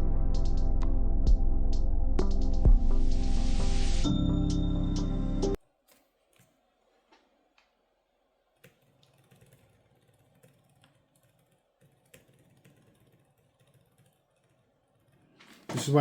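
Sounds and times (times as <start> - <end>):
laptop keyboard clicks: 8.6 - 15.7.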